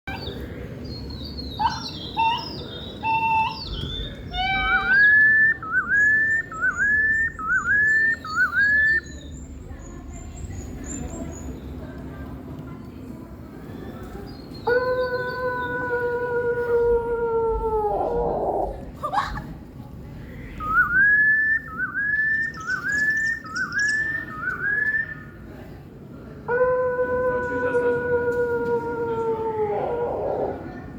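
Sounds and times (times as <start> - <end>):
bird whistling song: 1.2 - 9.4, 20.6 - 25.3
steady howl-like tone: 26.3 - 30.9.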